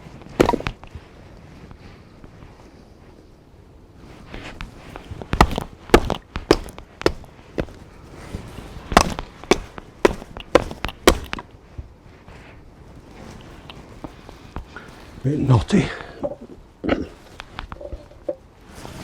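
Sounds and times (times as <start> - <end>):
blade chopping wood: 0.3 - 0.9, 4.9 - 11.5.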